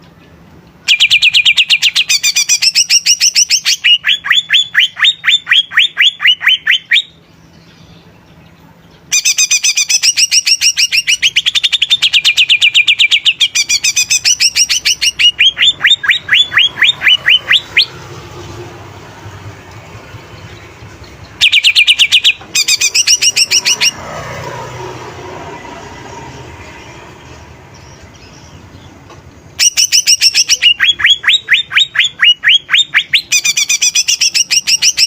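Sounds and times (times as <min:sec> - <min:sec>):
bird singing rapid trills: 0:00.0 - 0:35.0.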